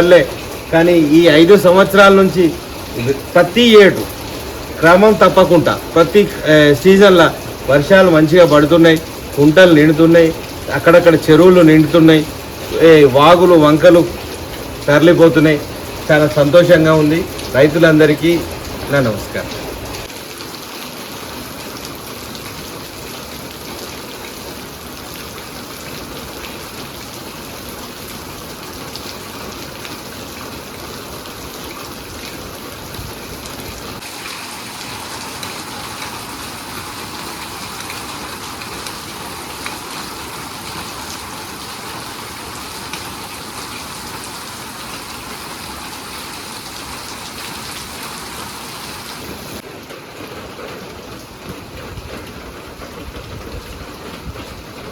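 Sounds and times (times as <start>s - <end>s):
heavy rain falling: 0.0s - 54.9s.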